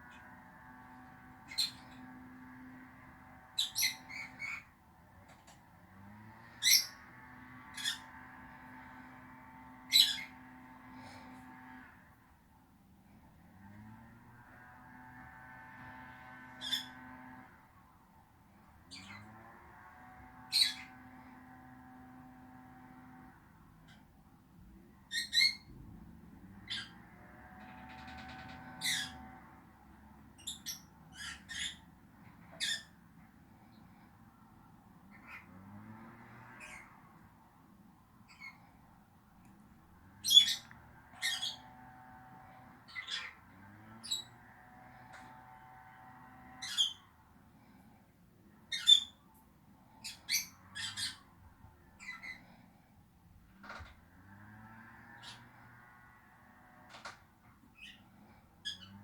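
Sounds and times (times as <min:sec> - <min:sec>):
lovebirds chirping and squawking: 0:01.4 - 0:02.1, 0:03.6 - 0:04.7, 0:06.6 - 0:07.0, 0:07.7 - 0:08.2, 0:09.9 - 0:10.4, 0:16.6 - 0:17.1, 0:18.9 - 0:19.3, 0:20.5 - 0:21.1, 0:25.1 - 0:25.7, 0:26.6 - 0:27.0, 0:27.6 - 0:29.4, 0:30.4 - 0:33.0, 0:35.1 - 0:35.5, 0:36.6 - 0:37.0, 0:38.3 - 0:38.7, 0:40.2 - 0:41.8, 0:42.8 - 0:44.4, 0:46.5 - 0:47.0, 0:48.7 - 0:49.2, 0:49.9 - 0:51.3, 0:52.0 - 0:52.6, 0:55.1 - 0:55.6, 0:57.8 - 0:59.0
lovebirds squawking: 0:27.8 - 0:29.2, 0:30.4 - 0:31.8, 0:40.2 - 0:41.7, 0:50.0 - 0:51.2.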